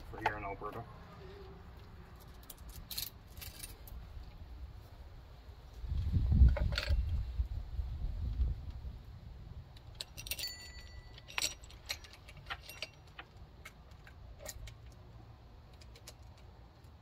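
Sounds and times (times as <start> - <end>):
saw chain clinking and jingling: 2.4 - 3.9, 10.0 - 13.4.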